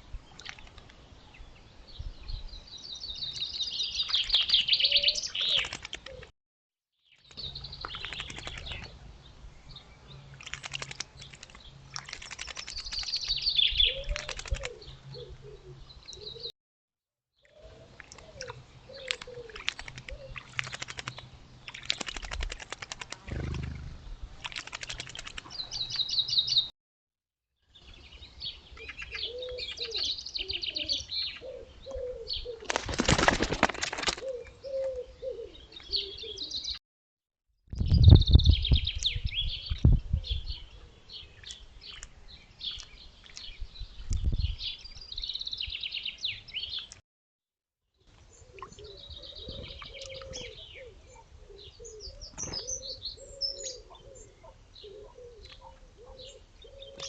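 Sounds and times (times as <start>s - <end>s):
small birds chirping: 0.2s - 6.3s, 7.0s - 16.5s, 17.4s - 26.7s, 27.7s - 32.8s, 34.2s - 36.8s, 37.8s - 47.0s, 48.1s - 57.0s
wing flaps: 5.4s - 6.3s, 7.3s - 8.9s, 10.4s - 13.4s, 14.0s - 14.8s, 19.1s - 25.6s, 32.6s - 34.3s
pigeon cooing: 29.2s - 32.6s, 34.2s - 36.6s, 48.4s - 57.0s.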